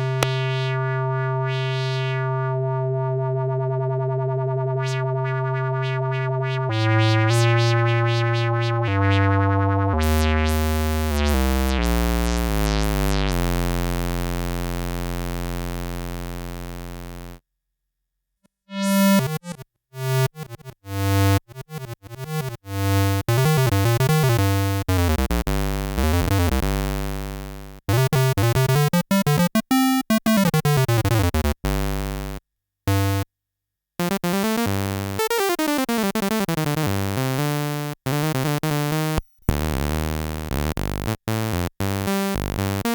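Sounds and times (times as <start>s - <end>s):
buzzy synthesizer notes: 0.0s - 17.4s, 34.0s - 42.9s.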